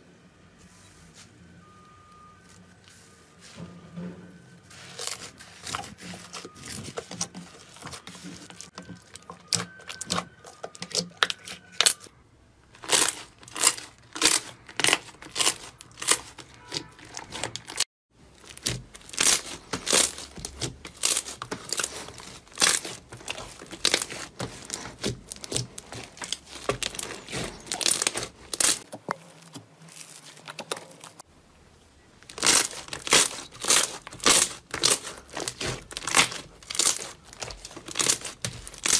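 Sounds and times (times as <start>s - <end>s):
slime crackling and popping: 4.9s - 12.1s, 12.8s - 28.9s, 32.2s - 38.9s.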